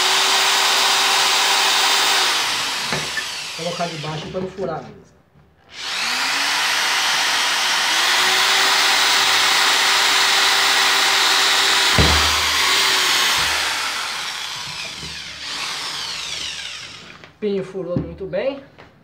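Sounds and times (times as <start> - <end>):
drill boring through wood: 0.0 - 4.6, 5.6 - 17.4
sharp knock: 11.9 - 12.7.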